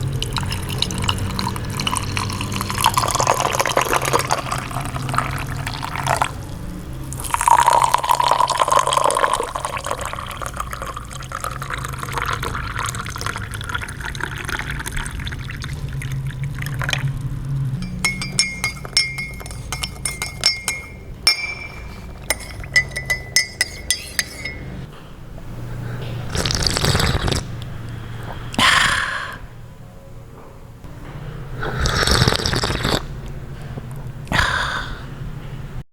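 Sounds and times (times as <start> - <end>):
tea pouring into a cup: 0.0 - 6.4, 7.1 - 17.1
spoon clinking against a cup: 17.8 - 24.9
slurping sips: 26.0 - 27.6, 31.6 - 33.2.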